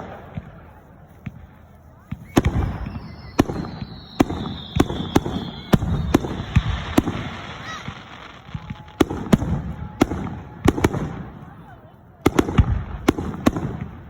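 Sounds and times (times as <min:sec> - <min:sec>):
fireworks banging: 0:00.0 - 0:14.0
falling high whistle: 0:02.2 - 0:09.0.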